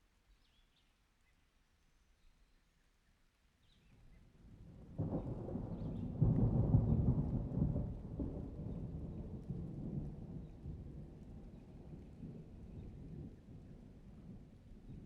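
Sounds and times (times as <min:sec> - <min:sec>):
rain: 0:01.0 - 0:15.0
thunder rumbling: 0:04.8 - 0:13.6.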